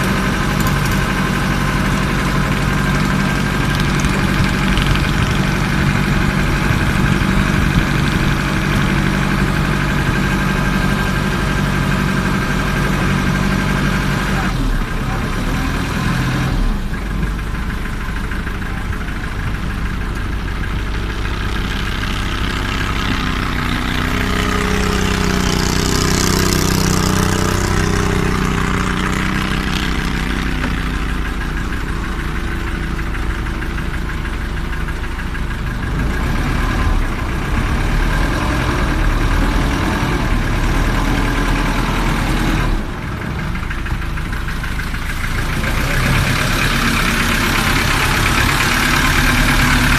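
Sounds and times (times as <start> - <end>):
boat engine running: 0.0 - 49.9.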